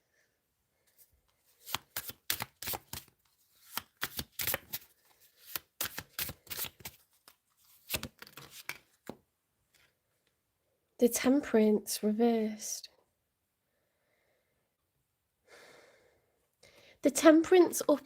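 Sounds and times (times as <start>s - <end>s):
cards being shuffled: 1.3s - 9.2s.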